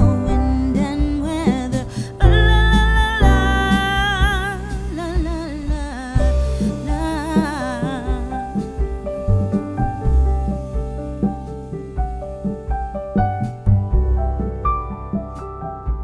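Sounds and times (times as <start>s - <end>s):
song with singer and bass: 0.0s - 11.1s.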